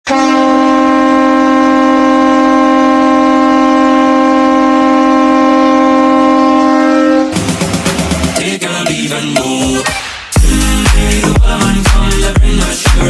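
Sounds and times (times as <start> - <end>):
goal horn blast: 0.0 - 8.3.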